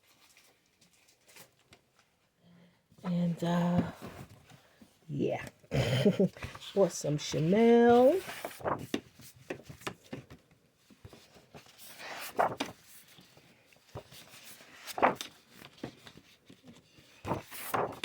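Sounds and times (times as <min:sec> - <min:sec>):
paper sheets rustling: 0:00.0 - 0:02.0, 0:06.2 - 0:18.0
paper swishes: 0:07.9 - 0:09.4, 0:11.5 - 0:13.1, 0:14.0 - 0:15.7, 0:17.2 - 0:18.0.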